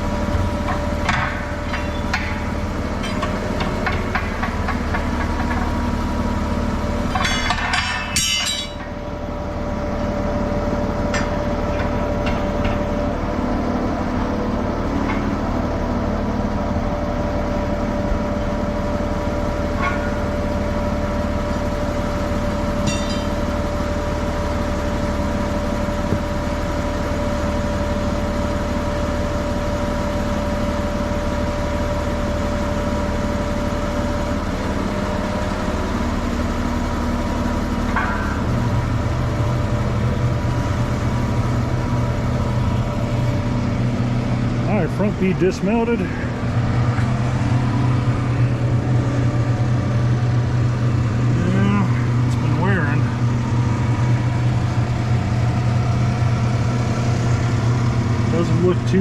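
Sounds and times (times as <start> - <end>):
hydraulic whine: 0.0 - 59.0
truck engine rumble: 0.0 - 59.0.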